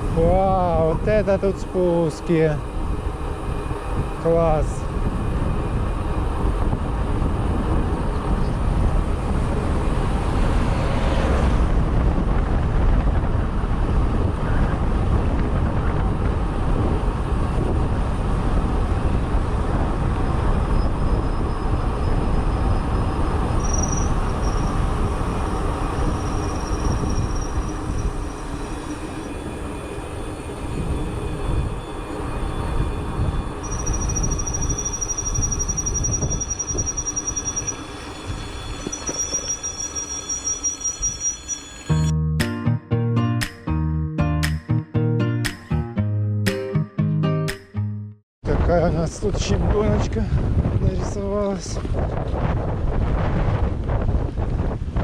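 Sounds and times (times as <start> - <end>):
wind buffeting microphone: 0.0 - 42.1, 48.4 - 55.0
high insect trill: 23.6 - 42.1.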